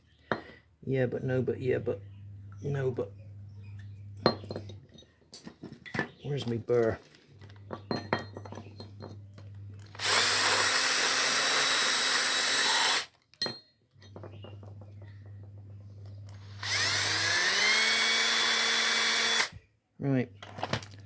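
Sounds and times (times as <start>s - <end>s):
power tool spinning rotary burr: 9.9s - 13.1s, 16.3s - 19.6s.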